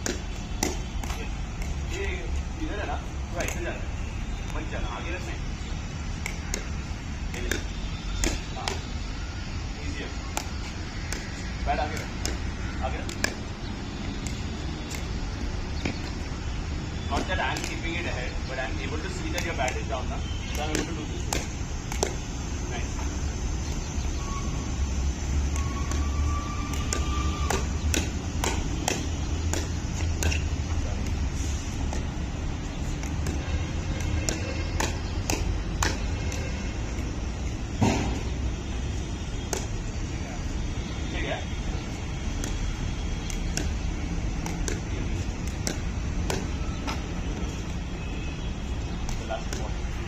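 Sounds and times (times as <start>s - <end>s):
paddles hitting plastic ball: 0.0s - 1.9s, 6.1s - 8.9s, 10.3s - 16.3s, 17.1s - 18.1s, 19.0s - 22.4s, 25.4s - 38.4s, 39.4s - 39.8s, 41.9s - 47.6s, 49.0s - 50.0s
paddles striking plastic ball: 26.7s - 31.2s.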